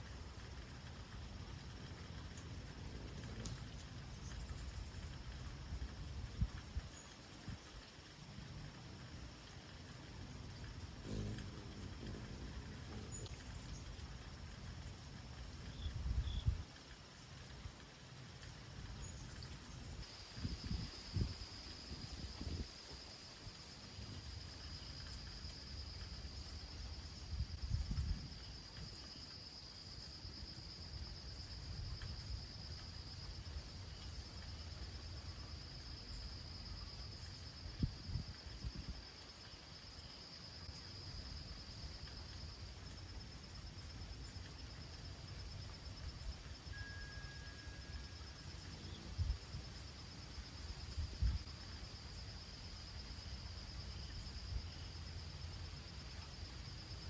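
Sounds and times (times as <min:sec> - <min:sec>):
insect trilling: 0:10.1 - 0:14.4, 0:46.2 - 0:53.3.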